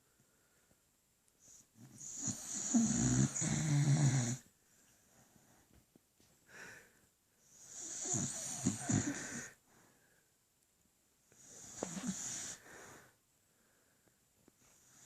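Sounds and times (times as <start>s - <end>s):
dog snoring: 1.4s - 4.5s, 7.4s - 9.6s, 11.4s - 12.6s
dog quiet breath: 11.3s - 15.0s.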